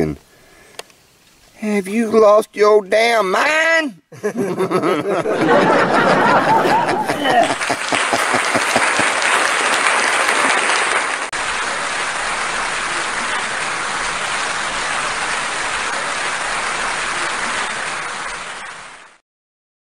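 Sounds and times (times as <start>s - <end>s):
applause: 5.5s - 19.2s.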